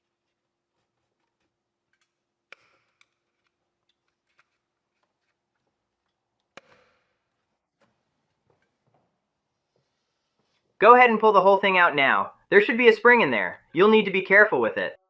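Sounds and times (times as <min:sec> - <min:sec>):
tools and parts clicking and tapping: 0:00.2 - 0:09.2.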